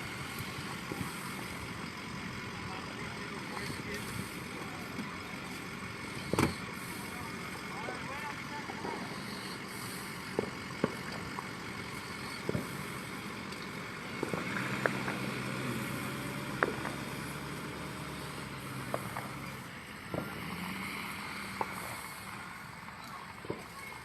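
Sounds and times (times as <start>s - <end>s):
vehicle engine running: 0.0s - 24.0s
short sharp pops: 16.5s - 17.3s, 18.6s - 20.5s.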